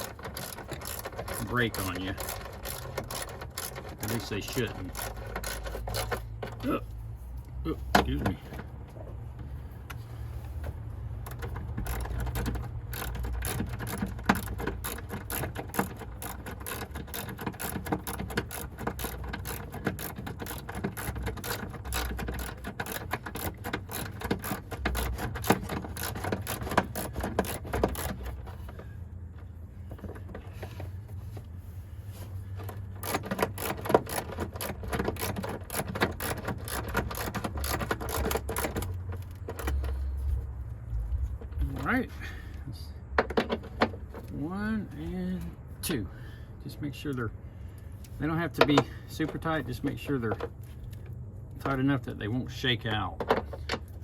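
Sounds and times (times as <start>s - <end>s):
ratchet wrench clicking: 0.0s - 6.6s, 11.2s - 28.8s, 32.6s - 40.0s.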